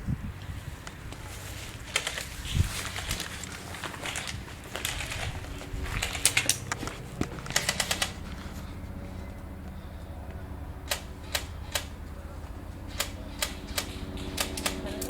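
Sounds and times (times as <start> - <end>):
airsoft guns firing: 4.0 - 8.3.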